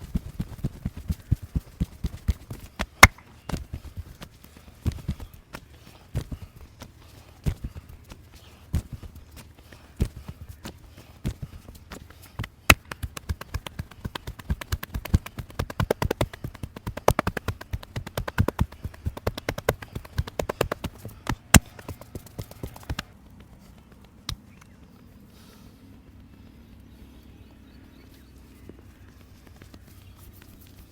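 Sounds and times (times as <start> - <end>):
hands slapping on body: 0.9 - 4.1, 11.2 - 23.1.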